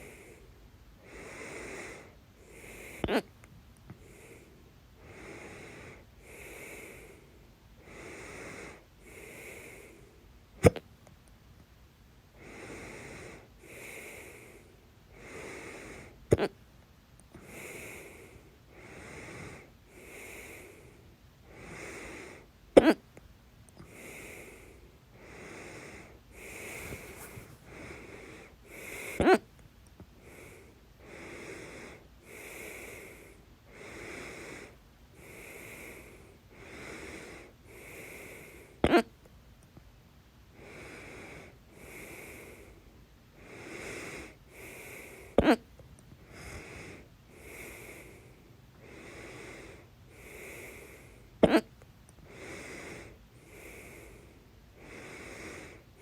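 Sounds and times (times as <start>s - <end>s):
woman hiccuping: 3.0s - 3.3s, 22.8s - 23.0s, 29.2s - 29.4s, 38.8s - 39.1s, 45.4s - 45.6s, 51.4s - 51.7s
quick breathing: 23.8s - 29.3s.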